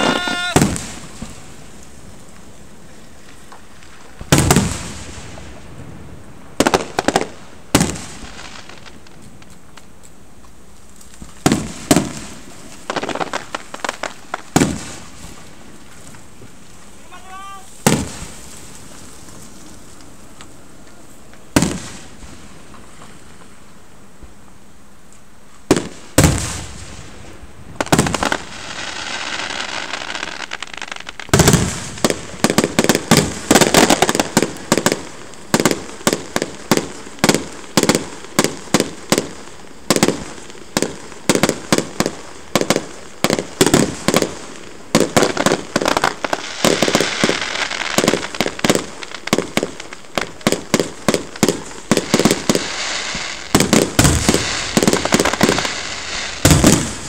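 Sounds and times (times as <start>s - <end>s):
firework shells booming: 0.0s - 1.7s, 3.5s - 5.7s, 11.4s - 15.4s, 17.1s - 18.6s, 25.7s - 27.2s, 27.8s - 30.0s, 31.3s - 57.0s
firework crackling: 0.0s - 23.8s, 25.0s - 57.0s.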